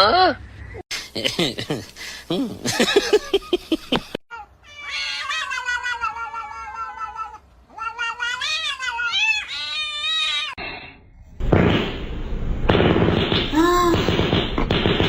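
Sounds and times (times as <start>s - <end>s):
cat yowling: 4.3s - 10.6s.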